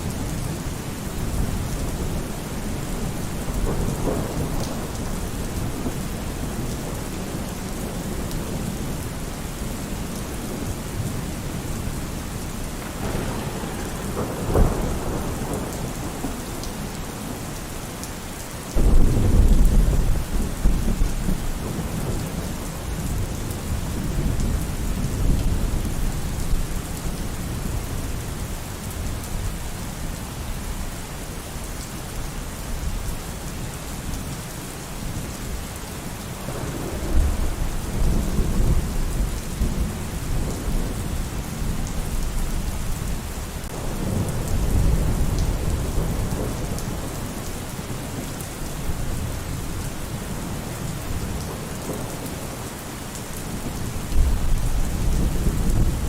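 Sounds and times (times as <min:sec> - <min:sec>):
low thunder rumble: 0:00.0 - 0:18.0, 0:18.8 - 0:26.7, 0:36.4 - 0:52.5, 0:53.4 - 0:56.0
steady rain: 0:00.0 - 0:56.0
thunder clap: 0:12.8 - 0:17.3, 0:18.8 - 0:23.2, 0:36.4 - 0:41.1.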